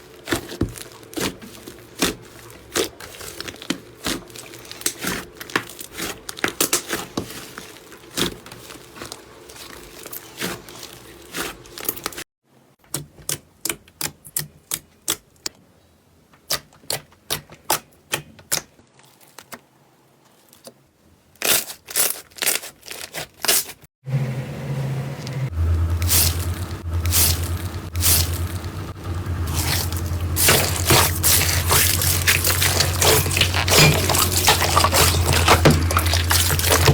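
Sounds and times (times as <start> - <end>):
low steady hum: 24.9 - 36.9
slime crackling and popping: 29.5 - 36.9.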